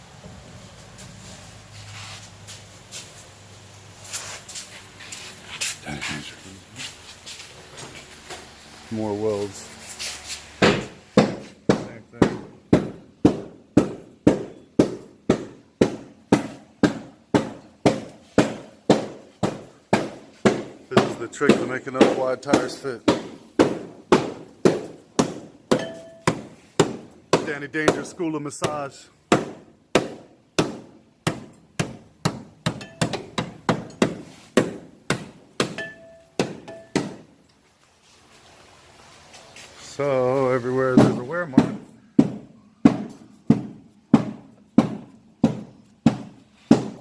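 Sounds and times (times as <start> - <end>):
hammer blows on sheet metal: 10.6 - 37.3.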